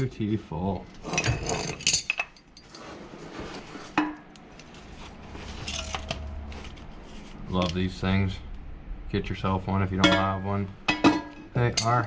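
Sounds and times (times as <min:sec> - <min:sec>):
metal tools clinking: 0:01.0 - 0:02.8, 0:05.5 - 0:06.8, 0:10.0 - 0:12.0.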